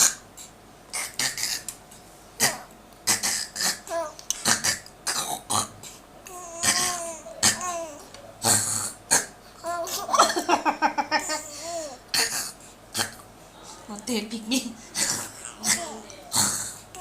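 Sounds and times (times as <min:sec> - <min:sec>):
baby laughing: 0:09.6 - 0:12.0.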